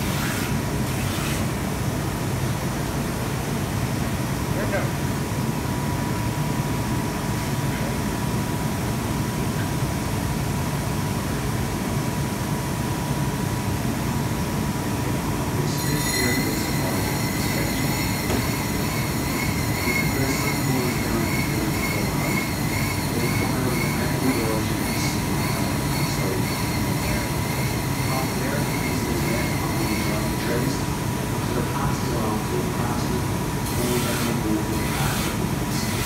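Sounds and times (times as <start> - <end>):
factory machinery humming: 0.0 - 36.0
high wavering grinding squeal: 15.6 - 30.8
thin steady tone: 15.7 - 30.7.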